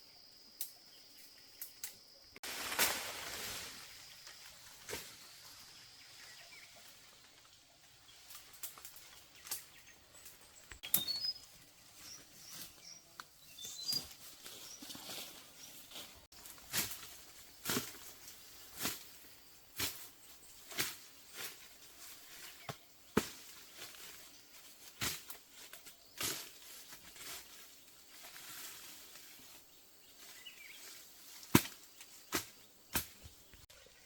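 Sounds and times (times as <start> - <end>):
bird chirps: 9.1 - 15.0.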